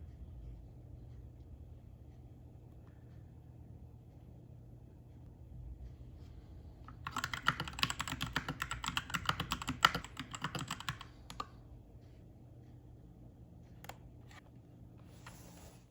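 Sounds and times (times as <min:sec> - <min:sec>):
mechanical keyboard typing: 0:06.9 - 0:11.5.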